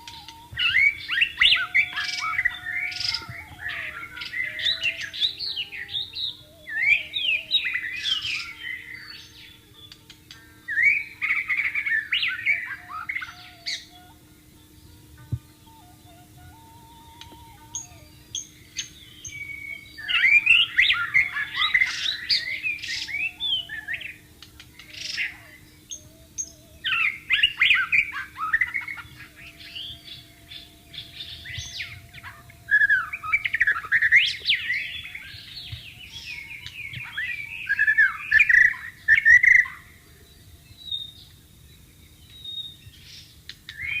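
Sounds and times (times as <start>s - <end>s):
bird singing whistled phrases: 0.0s - 10.1s, 10.7s - 41.3s, 43.7s - 44.0s
faint stepped low notes: 14.5s - 18.4s.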